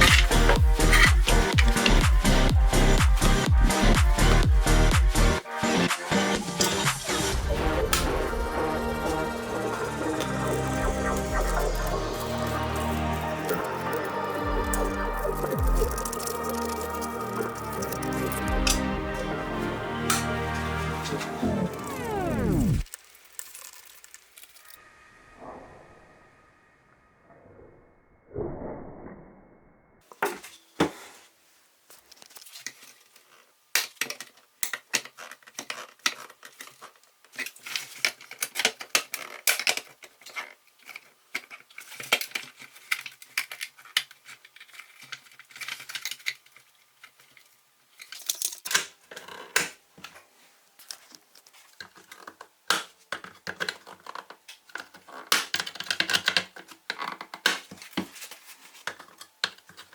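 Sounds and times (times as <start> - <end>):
metal toy parts clinking and scraping: 0.0 - 2.0, 15.8 - 18.8, 22.8 - 24.8, 34.0 - 48.8.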